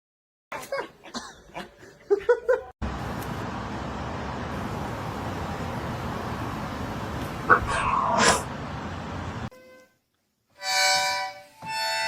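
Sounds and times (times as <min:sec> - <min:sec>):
person laughing: 0:00.6 - 0:02.8.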